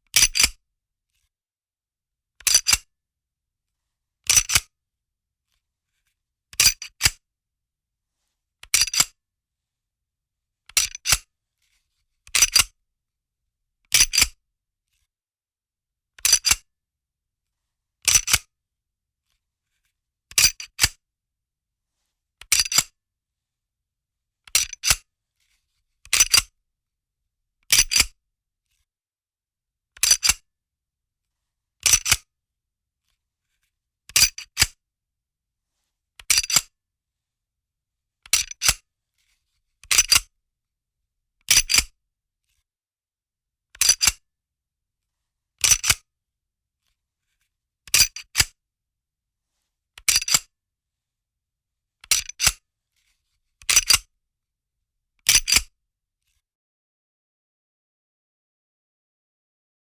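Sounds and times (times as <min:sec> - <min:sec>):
gun slide racking clicks: 0:53.6 - 0:54.0.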